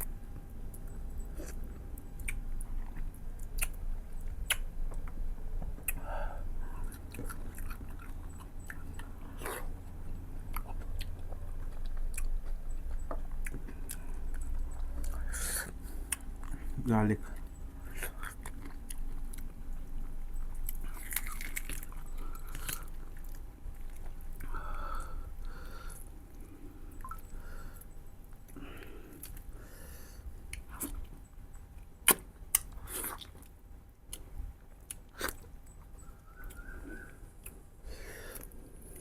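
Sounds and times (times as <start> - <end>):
wet chewing mouth noises: 1.2 - 6.1, 6.8 - 24.6.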